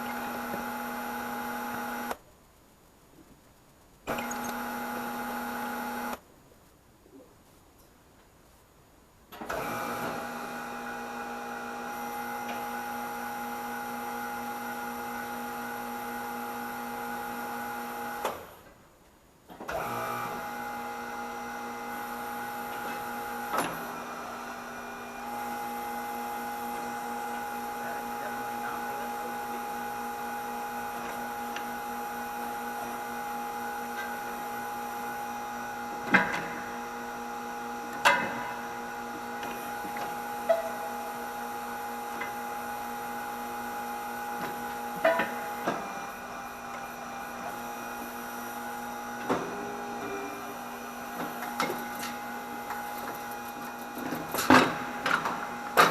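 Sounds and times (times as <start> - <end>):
electric motor humming: 0.0 - 2.2, 4.1 - 6.2, 19.8 - 54.1.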